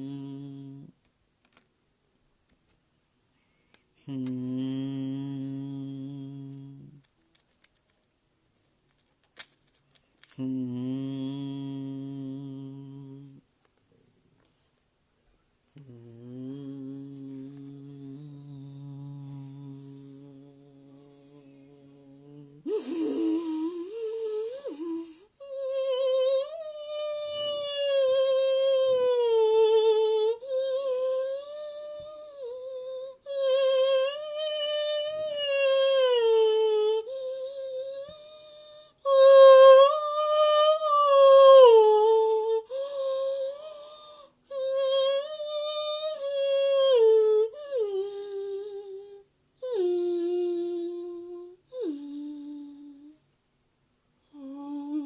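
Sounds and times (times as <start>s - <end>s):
woman breathing: 22.6s - 25.4s.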